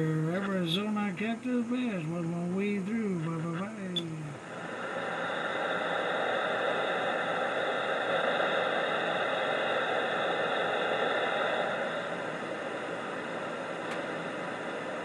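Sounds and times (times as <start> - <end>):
radio static hiss: 0.0 - 15.0.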